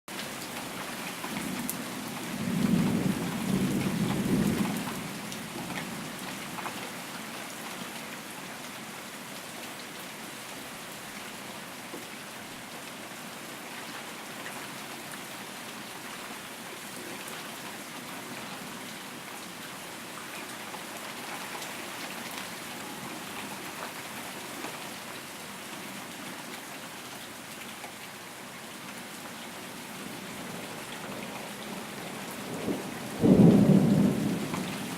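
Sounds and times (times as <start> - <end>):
heavy rain hissing and pattering: 0.1 - 34.9
low rumble of thunder: 2.3 - 6.2, 32.1 - 34.9.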